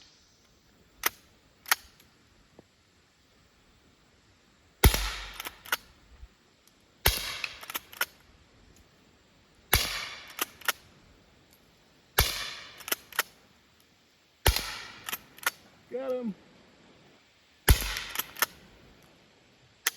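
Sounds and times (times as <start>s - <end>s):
rifle shots: 4.8s - 5.9s, 7.0s - 8.1s, 9.7s - 10.8s, 12.2s - 13.3s, 14.4s - 15.6s, 17.7s - 18.6s
rifle slide clicks: 12.8s - 13.4s, 15.0s - 15.6s, 18.0s - 18.6s.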